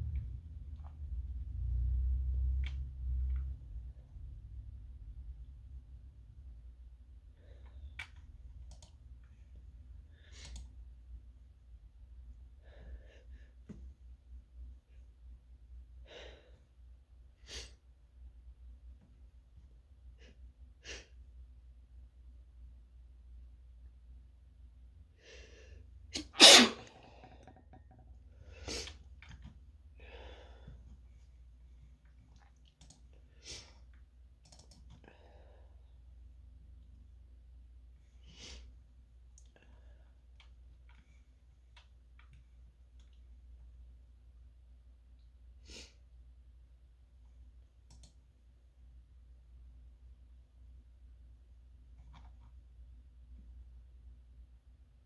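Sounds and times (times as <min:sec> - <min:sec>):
low steady hum: 0:00.0 - 0:26.2
person sneezing: 0:26.2 - 0:27.3
computer clicks: 0:34.4 - 0:35.0.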